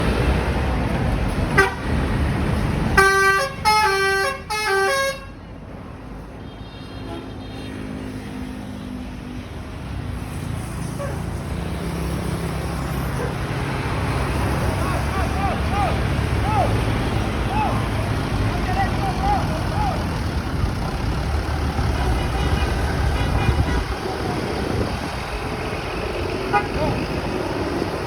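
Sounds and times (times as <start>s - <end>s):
bus engine rumble: 0.0s - 6.4s, 9.1s - 28.0s
traffic rumble: 0.0s - 28.0s
musical bus horn tune: 1.5s - 2.0s, 2.9s - 5.4s, 6.6s - 7.6s, 22.0s - 24.1s, 26.5s - 27.0s.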